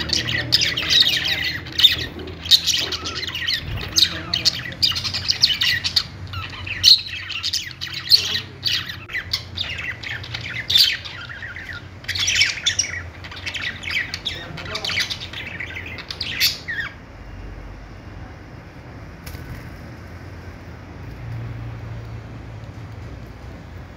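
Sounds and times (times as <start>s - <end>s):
budgerigars chattering: 0.0s - 17.0s
faint low hum: 0.0s - 23.9s.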